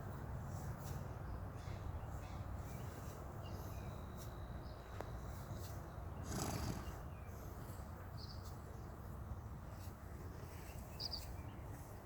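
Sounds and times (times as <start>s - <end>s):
horse snoring: 6.2s - 7.0s.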